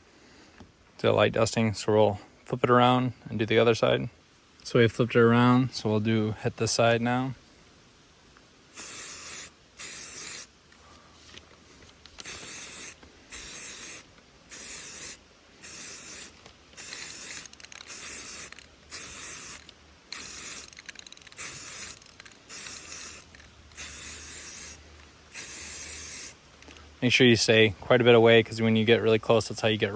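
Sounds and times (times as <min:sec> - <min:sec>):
spray paint hissing: 0:08.7 - 0:10.6, 0:11.2 - 0:26.5.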